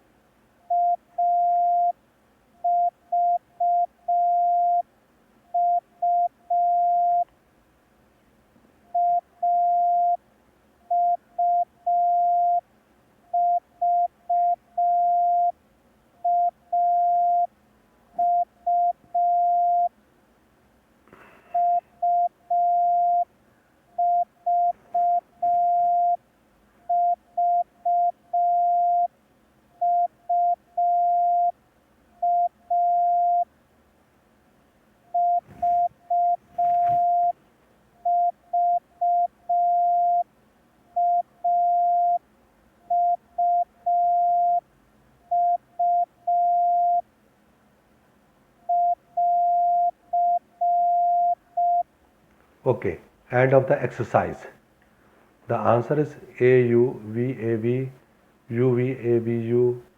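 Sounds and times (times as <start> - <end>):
morse code tone pulses: 0.7 - 2.0, 5.6 - 7.2, 9.0 - 10.2, 10.9 - 12.6, 13.4 - 15.5, 16.2 - 17.5, 18.2 - 19.9, 21.6 - 23.3, 24.0 - 26.2, 35.1 - 37.4, 38.0 - 40.2, 41.0 - 42.2, 42.9 - 44.6, 45.3 - 47.0, 48.7 - 51.8.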